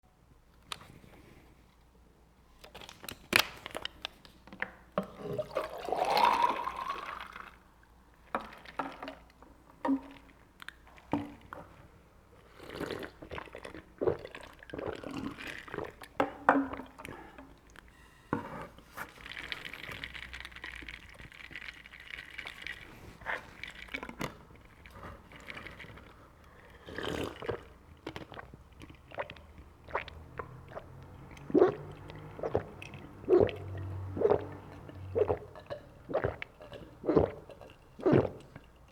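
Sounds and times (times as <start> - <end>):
drink poured into a glass: 5.1 - 9.3, 19.1 - 38.9.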